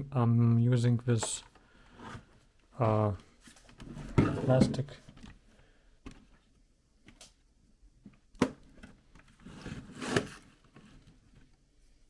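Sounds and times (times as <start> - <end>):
plastic scraping on plastic: 9.3 - 11.1.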